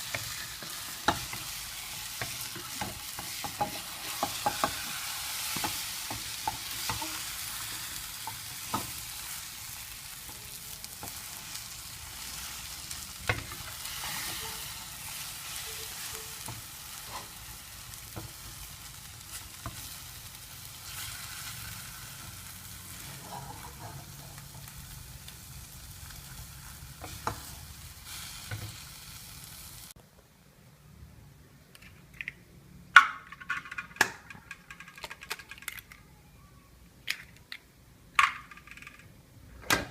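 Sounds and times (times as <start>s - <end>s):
food sizzling in oil: 0.0s - 30.0s.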